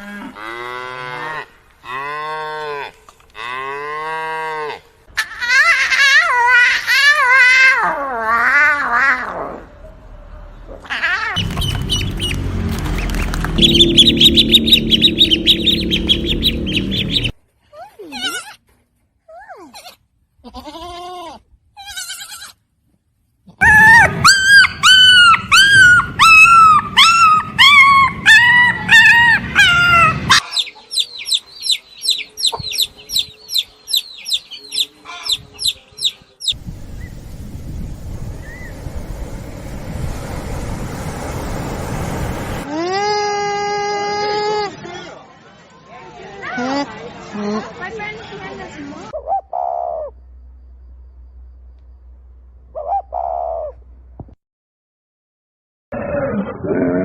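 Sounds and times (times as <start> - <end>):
chickens calling: 11.4 - 17.3, 23.6 - 36.6
chicks peeping: 11.4 - 17.3, 30.4 - 36.6
animal calling: 52.7 - 53.8.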